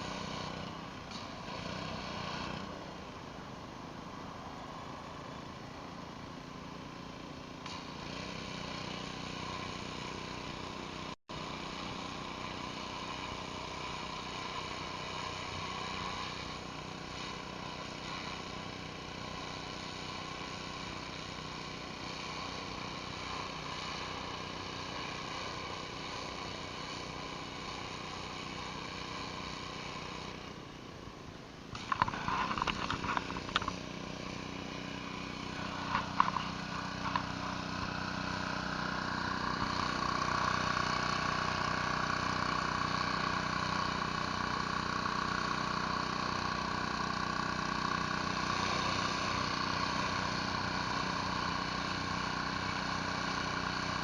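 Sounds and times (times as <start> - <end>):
pressure washer engine running: 0.0 - 54.0
water spraying on concrete: 31.8 - 54.0.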